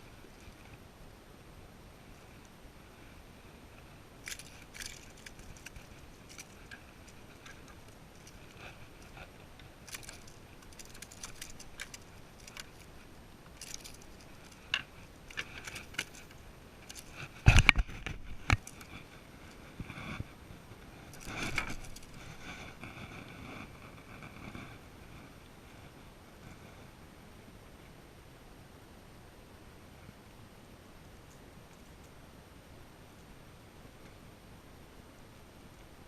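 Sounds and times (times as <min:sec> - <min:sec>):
fishing gear clicking and rattling: 0:04.2 - 0:19.7, 0:21.1 - 0:23.1.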